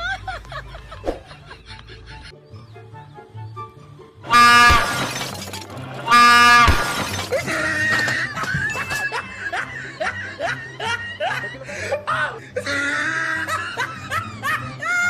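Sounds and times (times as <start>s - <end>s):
background music: 0.0s - 15.0s
train horn blasts: 4.3s - 4.9s, 6.1s - 6.7s.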